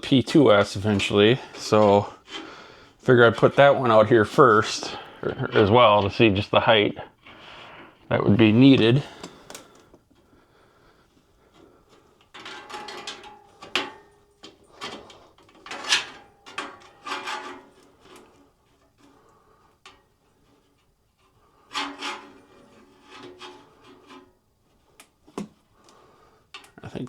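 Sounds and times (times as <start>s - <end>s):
scraping against wooden shelf: 11.6s - 19.3s, 20.6s - 24.4s.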